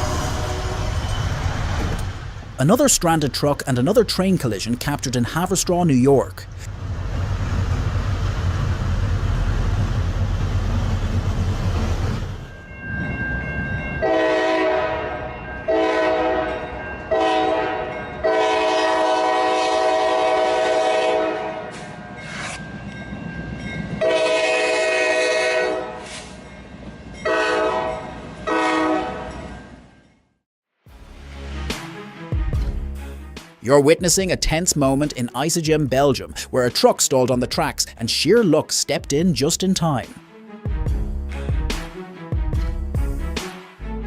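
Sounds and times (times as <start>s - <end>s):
locomotive air horn blasts: 0.0s - 1.0s, 14.0s - 21.8s, 24.0s - 26.1s, 27.2s - 29.4s.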